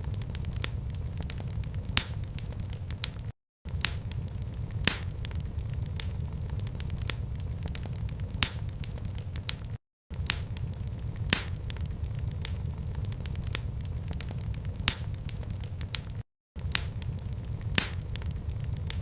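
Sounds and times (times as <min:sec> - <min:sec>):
fire crackling and popping: 0:00.0 - 0:19.0
low fire rumble: 0:00.0 - 0:19.0.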